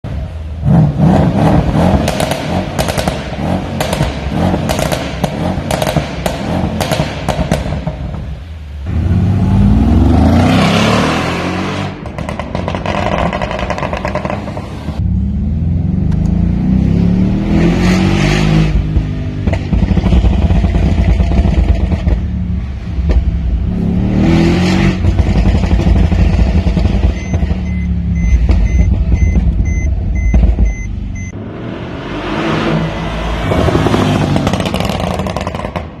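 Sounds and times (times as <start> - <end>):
exhaust crackles and pops: 1.8 - 8.2, 12.0 - 14.7, 33.9 - 36.0.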